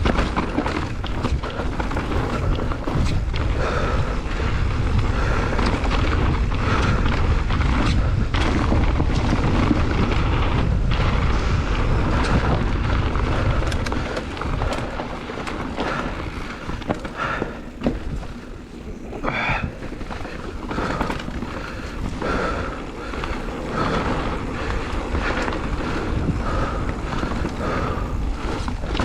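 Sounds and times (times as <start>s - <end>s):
low rumbling buffeting noise: 0.0s - 29.0s.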